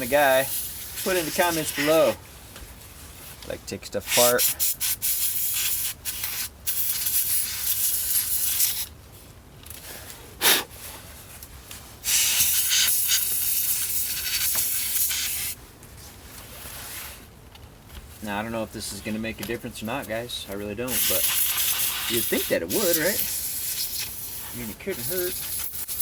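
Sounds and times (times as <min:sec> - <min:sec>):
compressed air duster spraying: 0:00.0 - 0:02.2, 0:04.1 - 0:08.9, 0:12.0 - 0:15.6, 0:20.9 - 0:26.0.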